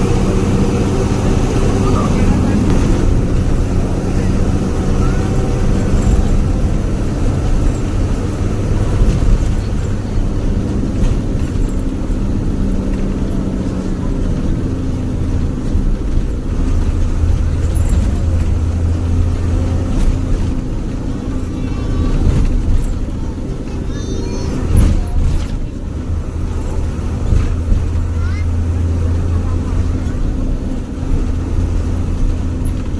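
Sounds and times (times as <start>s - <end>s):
bus diesel engine growling: 0.0s - 32.9s
road noise: 0.0s - 32.9s.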